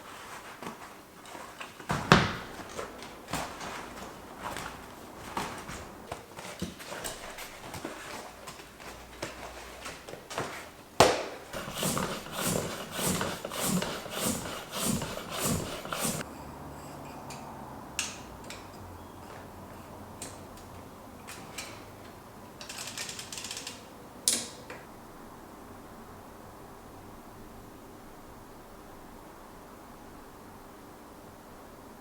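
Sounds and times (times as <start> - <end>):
short rustle: 0.0 - 9.8, 11.5 - 16.2
rhythmic strokes on bicycle parts: 11.6 - 16.2.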